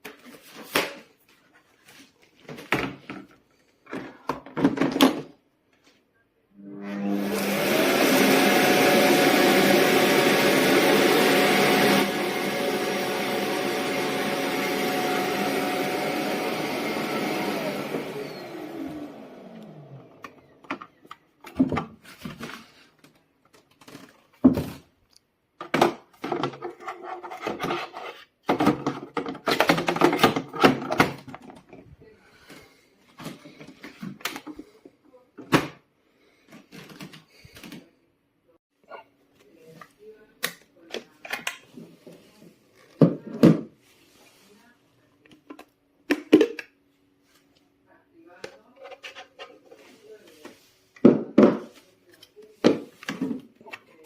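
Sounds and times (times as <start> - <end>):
vacuum motor running: 6.6 - 20.6.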